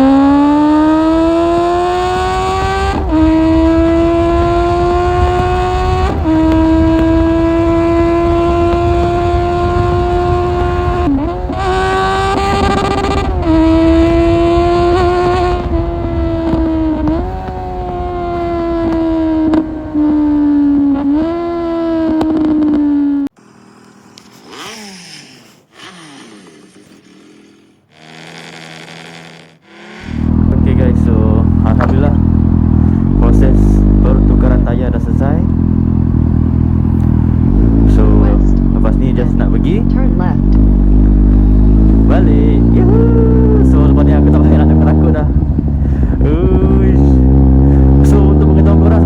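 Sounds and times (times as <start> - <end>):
motorcycle engine under way: 0.0 - 49.0
wind noise: 1.8 - 22.7.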